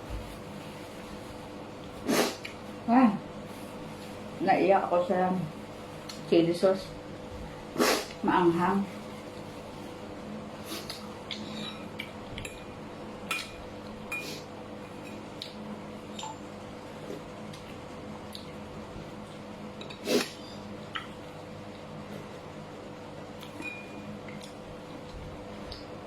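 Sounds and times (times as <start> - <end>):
utensils clinking against bowl: 11.3 - 15.2.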